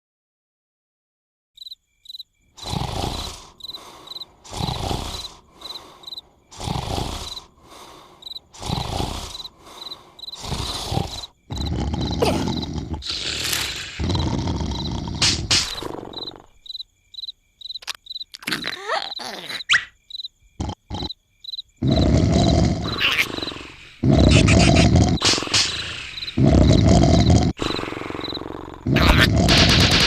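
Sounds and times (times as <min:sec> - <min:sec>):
crickets chirping: 0:01.6 - 0:30.0
cartoon snoring: 0:02.6 - 0:16.6, 0:20.6 - 0:21.2, 0:21.8 - 0:30.0.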